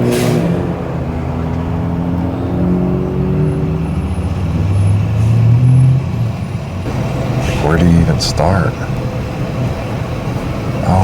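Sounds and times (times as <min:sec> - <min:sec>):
road noise: 0:00.0 - 0:11.0
vehicle engine running: 0:00.0 - 0:11.0.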